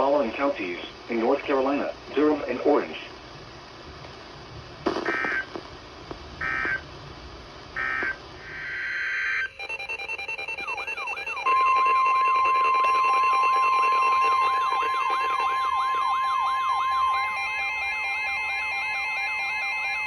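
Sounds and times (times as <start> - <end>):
steady warning alarm tone: 9.0 - 20.0
rising siren wail: 9.2 - 20.0.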